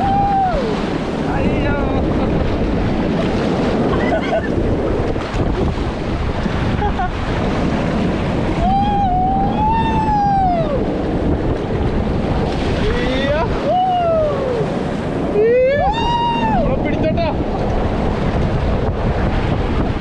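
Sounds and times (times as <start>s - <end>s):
wavering high shout: 0.0s - 0.8s, 8.6s - 11.0s, 13.6s - 14.7s, 15.3s - 16.7s
water rushing: 0.0s - 20.0s
wind noise on microphone: 0.0s - 20.0s.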